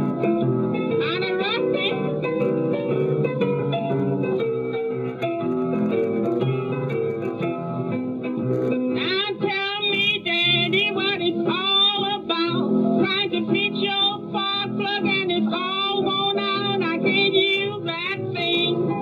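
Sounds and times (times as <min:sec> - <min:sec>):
piano: 0:00.0 - 0:19.0
woman singing with vibrato: 0:01.0 - 0:02.1, 0:09.0 - 0:18.9.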